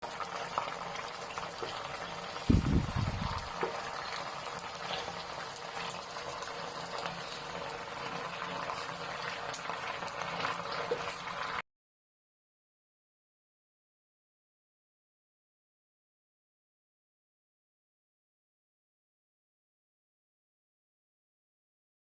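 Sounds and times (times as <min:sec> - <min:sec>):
chicken frying in hot oil: 0:00.0 - 0:11.6.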